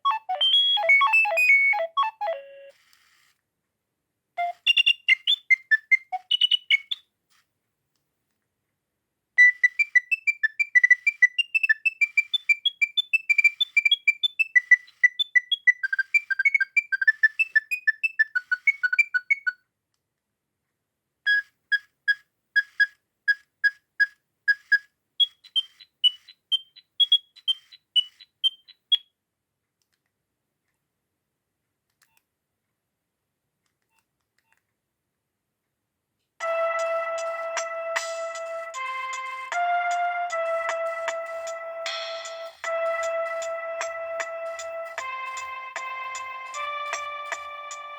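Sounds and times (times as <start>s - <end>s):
beeping ringtone melodies: 0.1s - 2.7s, 36.4s - 47.9s
evenly spaced beeps: 0.1s - 2.7s.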